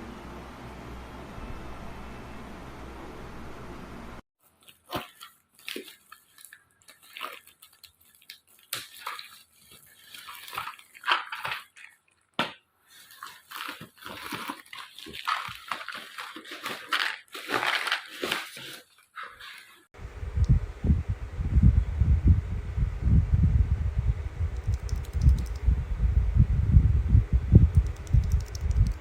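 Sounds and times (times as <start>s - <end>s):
small plastic parts clicking: 27.8s - 29.0s.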